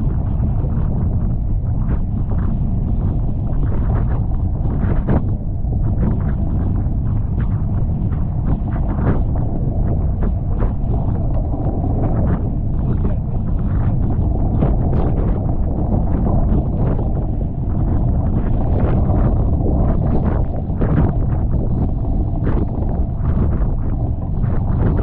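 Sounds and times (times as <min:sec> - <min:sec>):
wind buffeting microphone: 0:00.0 - 0:25.0.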